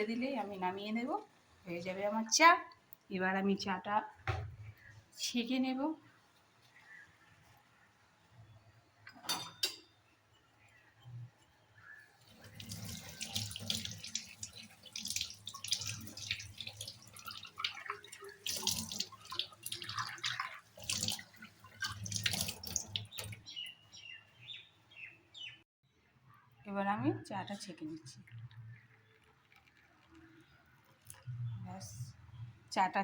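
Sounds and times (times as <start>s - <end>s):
tap water splashing in sink: 12.2s - 23.5s.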